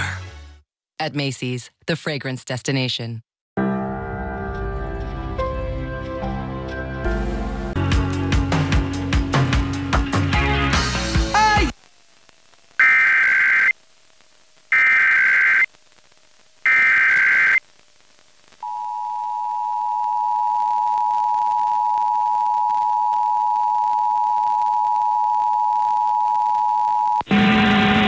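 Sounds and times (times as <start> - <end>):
data bursts: 12.8 - 13.8, 14.7 - 15.7, 16.6 - 17.6.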